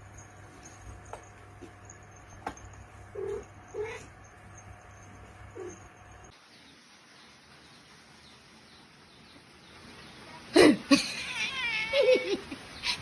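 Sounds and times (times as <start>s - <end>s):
cat yowling: 3.1s - 4.2s, 11.0s - 12.4s
low hiss: 6.3s - 13.0s.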